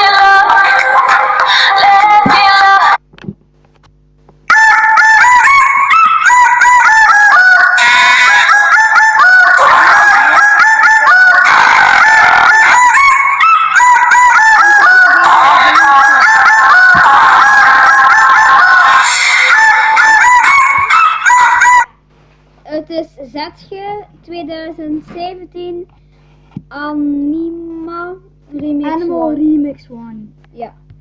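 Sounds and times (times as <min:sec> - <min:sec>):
geese honking: 0:04.5 - 0:21.9.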